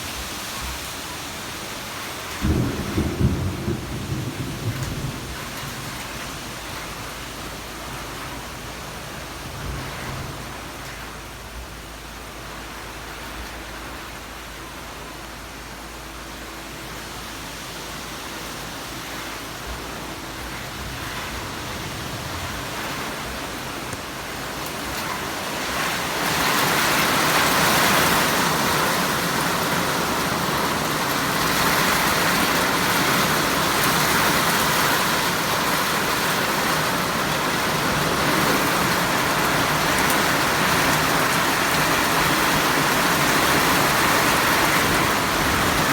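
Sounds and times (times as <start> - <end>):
rain falling: 0.0 - 45.9.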